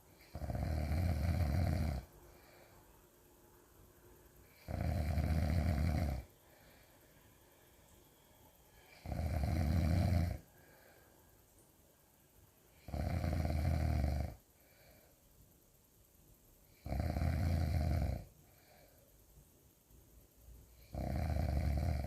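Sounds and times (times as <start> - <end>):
quiet breathing: 0.0 - 22.0
loud snoring: 0.2 - 2.1, 4.6 - 6.3, 8.9 - 10.4, 12.8 - 14.4, 16.8 - 18.3, 20.8 - 22.0.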